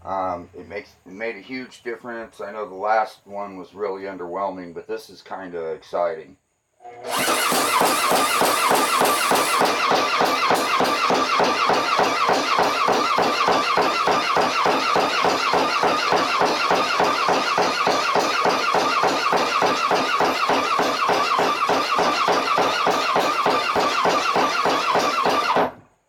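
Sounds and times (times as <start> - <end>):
power hammer clanging: 7.0 - 25.8.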